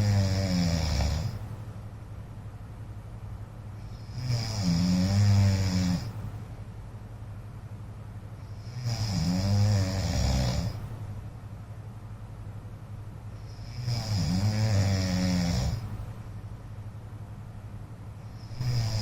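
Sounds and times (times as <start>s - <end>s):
man snoring loudly: 0.0s - 1.4s, 3.9s - 6.2s, 8.6s - 10.8s, 13.5s - 15.9s, 18.4s - 19.0s.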